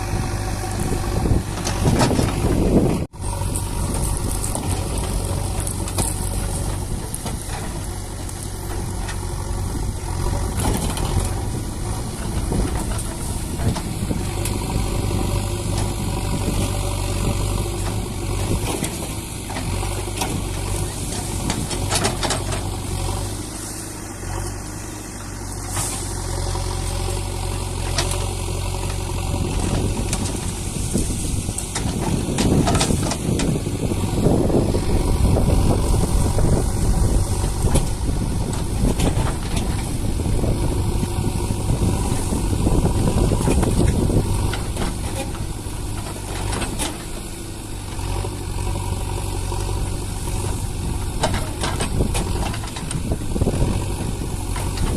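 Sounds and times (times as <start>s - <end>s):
excavator diesel engine running: 0.0s - 54.9s.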